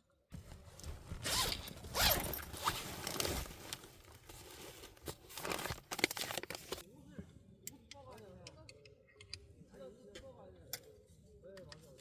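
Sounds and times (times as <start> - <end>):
rustling and crinkling: 0.3 - 6.8.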